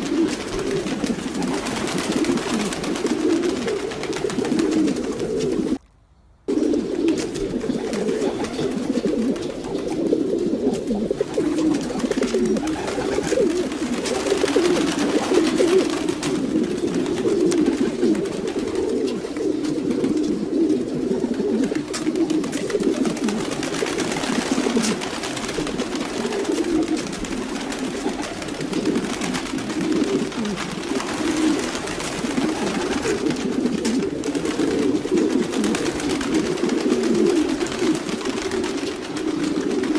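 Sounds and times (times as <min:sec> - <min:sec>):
pigeons cooing: 0:00.0 - 0:05.8, 0:06.4 - 0:39.9.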